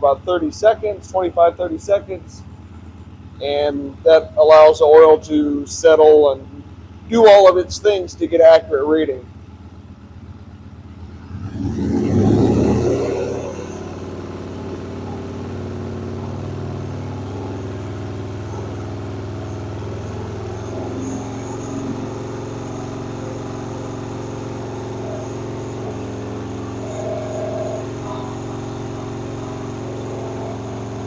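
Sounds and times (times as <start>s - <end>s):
motorcycle engine revving: 0.0s - 31.0s.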